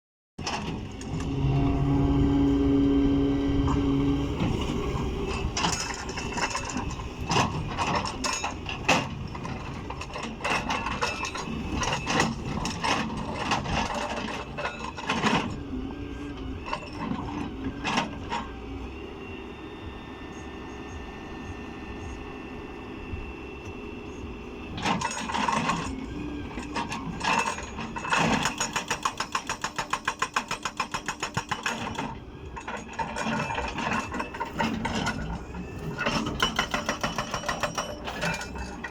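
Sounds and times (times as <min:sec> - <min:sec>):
excavator engine running: 0:00.4 - 0:38.9
hydraulic breaker clanking on stone: 0:24.8 - 0:38.9.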